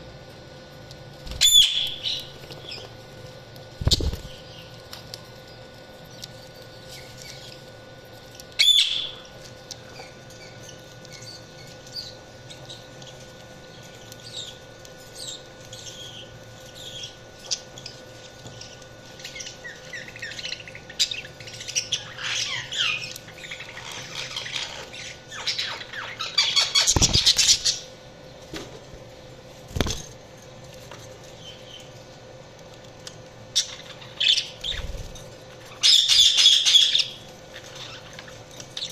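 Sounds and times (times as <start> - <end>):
faint steady hum: 0.0 - 38.9
budgerigars chirping: 35.8 - 38.0.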